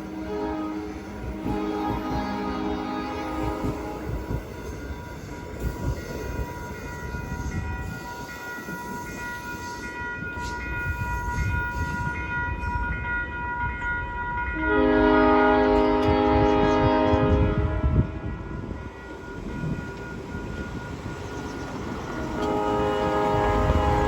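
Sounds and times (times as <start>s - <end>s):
electric train rumbling past: 0.0s - 24.0s
high train whine: 0.0s - 24.0s.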